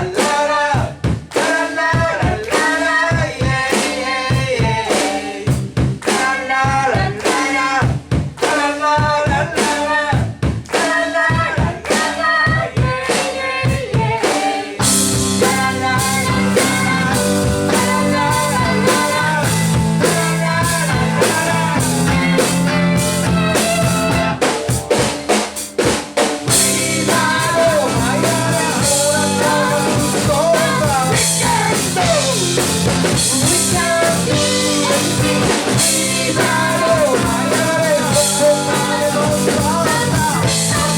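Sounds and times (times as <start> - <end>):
live rock band playing: 14.6 - 40.9
lead guitar line bending pitch: 15.0 - 25.5.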